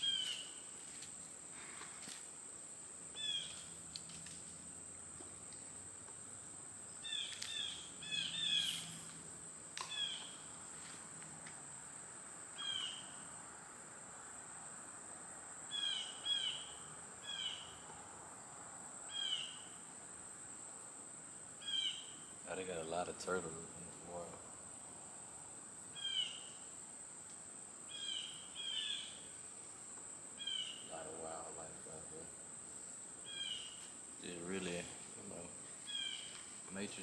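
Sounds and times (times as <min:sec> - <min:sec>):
insect drone: 0:00.0 - 0:37.0
bird call notes: 0:07.0 - 0:09.2, 0:09.8 - 0:10.5, 0:12.6 - 0:13.2.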